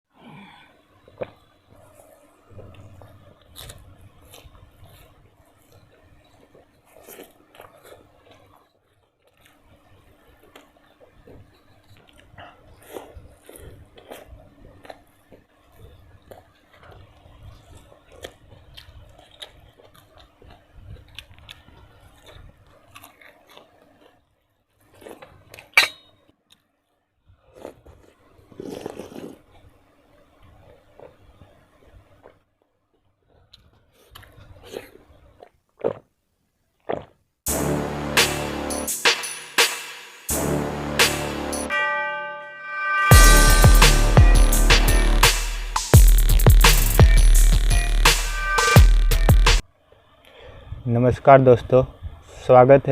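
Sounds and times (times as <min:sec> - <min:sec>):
chewing and crunching food: 0:01.0 - 0:25.8, 0:26.5 - 0:37.2.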